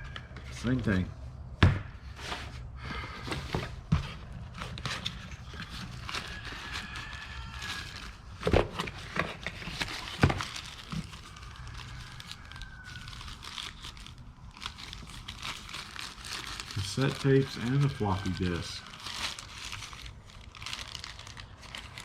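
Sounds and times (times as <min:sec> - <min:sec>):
paper and plastic rustling: 0:02.1 - 0:22.0
items knocking together: 0:07.8 - 0:11.2.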